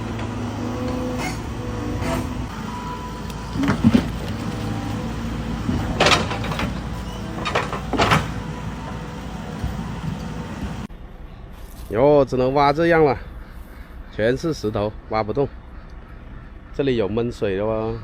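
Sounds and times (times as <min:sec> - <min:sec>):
excavator engine running: 0:00.0 - 0:10.9
bucket scraping stony ground: 0:03.4 - 0:08.5.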